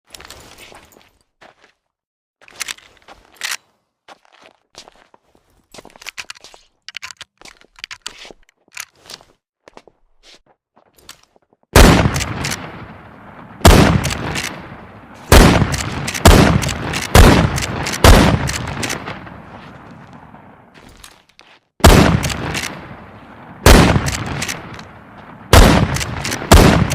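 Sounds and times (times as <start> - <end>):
rifle handling clicks: 2.5 - 3.6, 6.0 - 9.1, 12.1 - 12.6, 14.0 - 14.6, 15.7 - 19.1, 22.2 - 22.8, 24.0 - 24.9, 25.8 - 26.5
rifle shots echoing: 11.8 - 20.6, 21.8 - 26.9.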